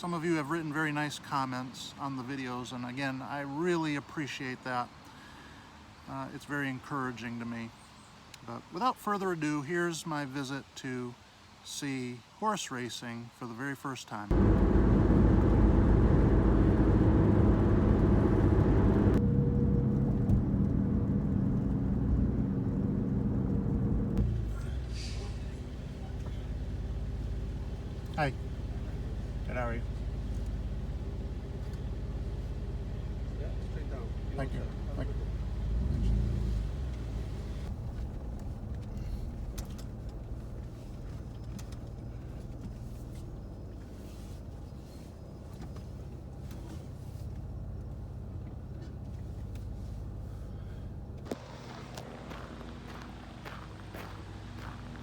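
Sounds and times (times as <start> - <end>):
car engine and road noise: 14.3 - 55.0.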